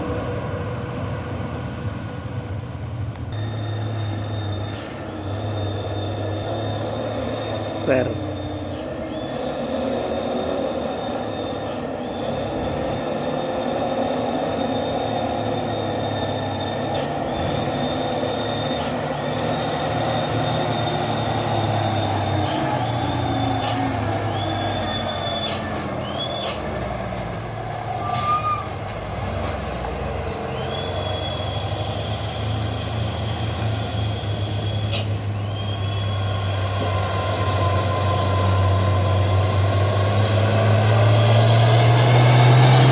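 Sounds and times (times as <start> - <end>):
truck engine running low: 0.0 - 42.9
high-pitched brake squeals: 3.4 - 26.7, 27.8 - 28.8, 30.5 - 39.6.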